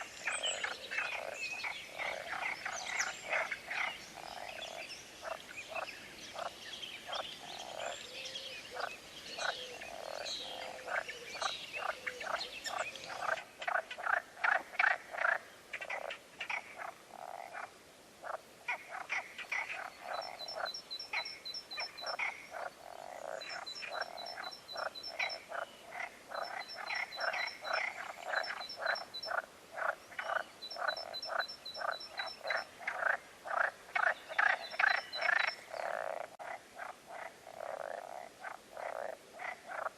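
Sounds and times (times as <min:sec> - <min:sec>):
frogs croaking: 0:00.0 - 0:39.9.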